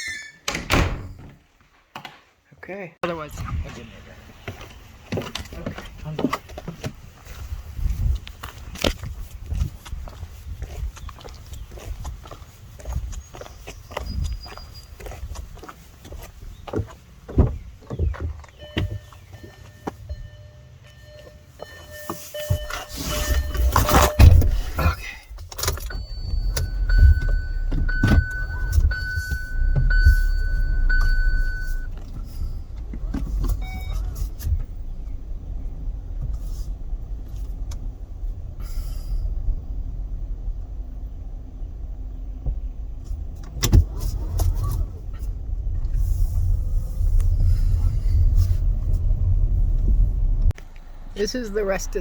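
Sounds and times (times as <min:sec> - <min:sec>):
car engine rumbling: 0:03.1 - 0:52.0
high electronic beeps: 0:18.6 - 0:24.6, 0:25.9 - 0:31.9.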